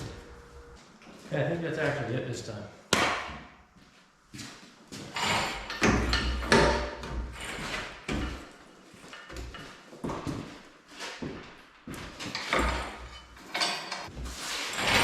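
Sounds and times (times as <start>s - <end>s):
low rumble: 0.0s - 0.9s
metal scraping and clunking: 5.1s - 8.6s, 12.2s - 15.0s.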